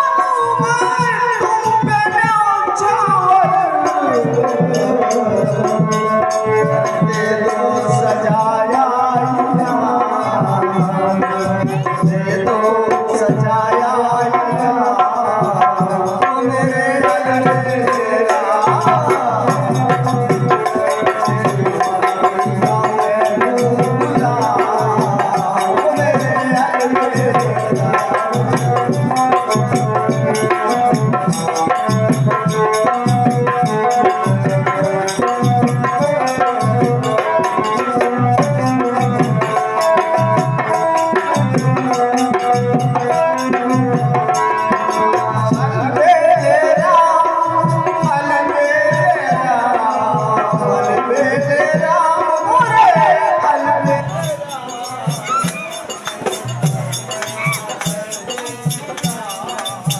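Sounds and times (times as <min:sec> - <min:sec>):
steady drum beat: 0:00.0 - 0:59.9.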